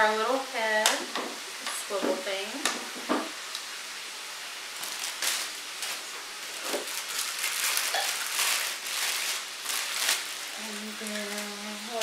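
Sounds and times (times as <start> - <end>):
plastic packaging crinkling: 4.7 - 12.0.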